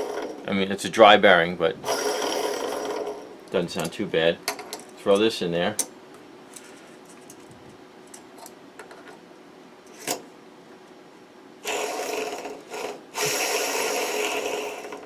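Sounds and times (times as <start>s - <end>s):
ball bearing whirring: 0.0s - 0.5s, 1.8s - 4.6s, 11.6s - 15.0s.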